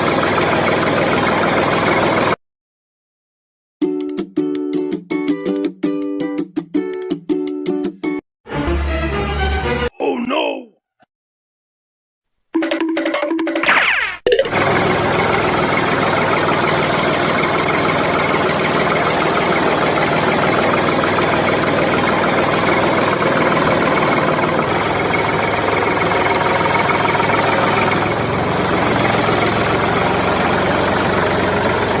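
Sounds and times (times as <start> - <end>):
small motor rattling: 14.5 - 32.0.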